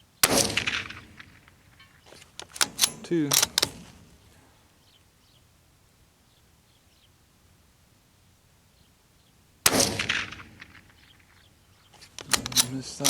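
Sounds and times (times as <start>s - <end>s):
rifle shot: 0.2s - 4.3s, 9.6s - 11.4s, 12.1s - 13.0s.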